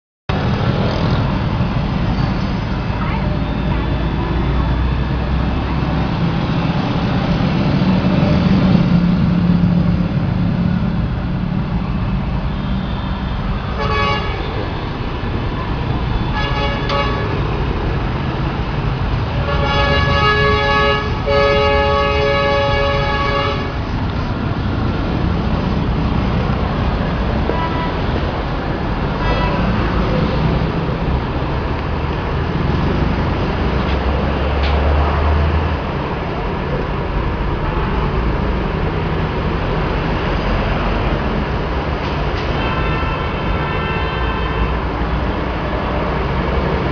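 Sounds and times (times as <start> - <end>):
horn toots: 13.7 - 14.6, 16.3 - 17.5, 19.4 - 23.8.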